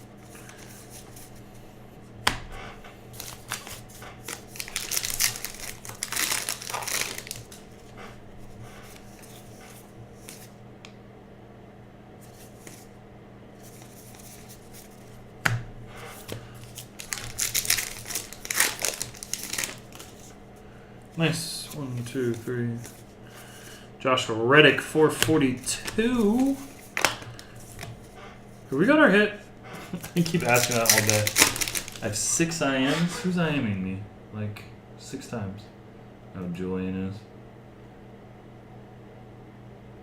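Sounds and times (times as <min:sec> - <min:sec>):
card pack wrappers crinkling: 0:03.1 - 0:07.9, 0:13.6 - 0:15.2, 0:16.1 - 0:20.4, 0:25.1 - 0:28.1, 0:29.8 - 0:32.3.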